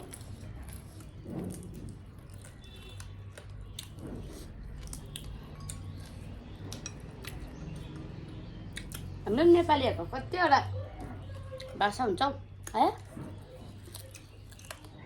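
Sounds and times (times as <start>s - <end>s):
person chewing food: 0.0s - 9.2s, 12.6s - 15.0s.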